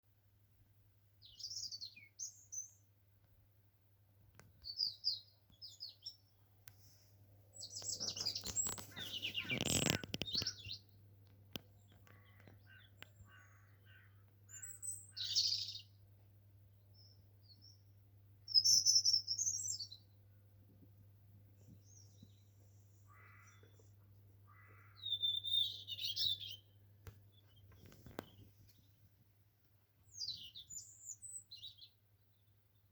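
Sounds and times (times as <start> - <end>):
bird chirping: 1.2 - 2.8, 4.6 - 6.3, 7.5 - 11.0, 11.6 - 16.0, 16.9 - 20.2, 21.6 - 29.0, 30.0 - 32.9
bird chattering: 7.7 - 10.8.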